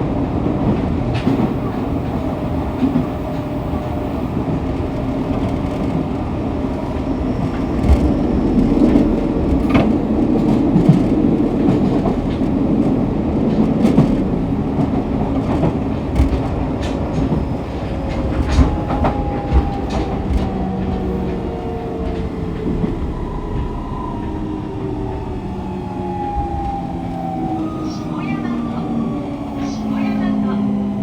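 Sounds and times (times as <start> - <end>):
train running: 0.0 - 31.0.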